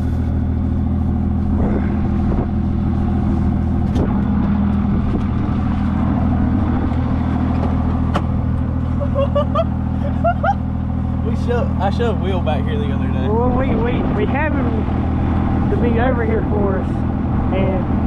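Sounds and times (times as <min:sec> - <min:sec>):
vehicle engine running: 0:00.0 - 0:18.0.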